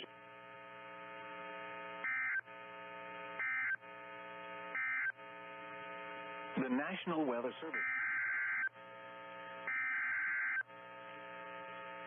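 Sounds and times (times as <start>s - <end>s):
steady buzzing hum: 0.0s - 12.0s
warbling data tone bursts: 7.7s - 8.7s, 9.7s - 10.6s.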